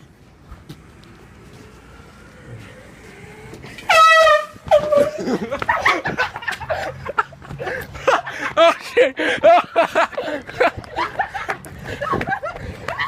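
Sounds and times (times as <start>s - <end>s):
air horn blast: 3.7s - 5.2s.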